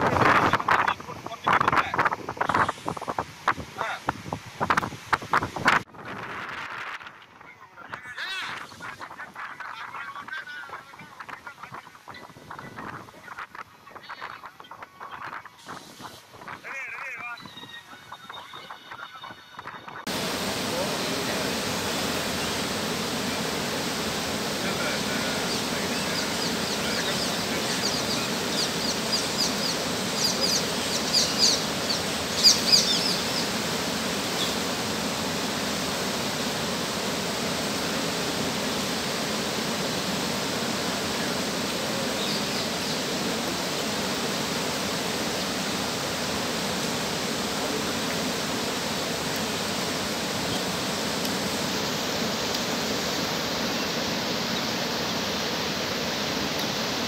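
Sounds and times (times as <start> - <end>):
floodwater rushing: 20.0 - 57.0
bird chirping: 25.4 - 33.5.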